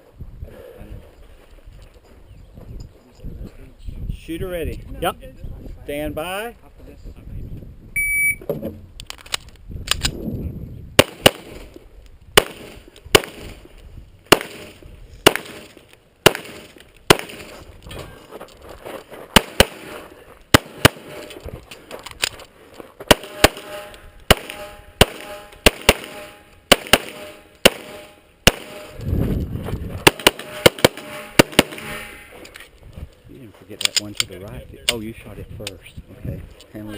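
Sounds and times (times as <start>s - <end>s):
pistol shots: 11.0s - 11.6s, 12.4s - 13.6s, 14.3s - 17.6s, 19.4s - 21.4s, 23.1s - 29.0s, 30.0s - 32.2s.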